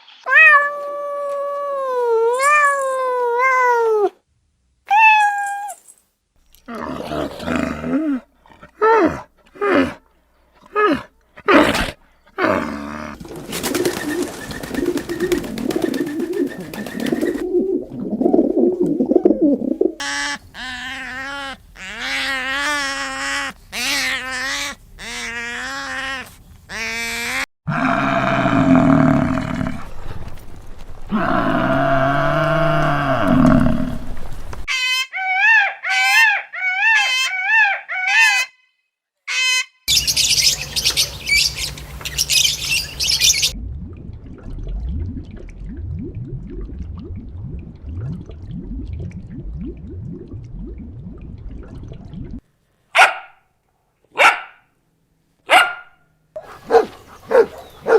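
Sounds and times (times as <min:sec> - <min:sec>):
rough low growling call: 0:27.7 - 0:30.2, 0:31.1 - 0:34.3
longer animal calls: 0:34.7 - 0:38.5.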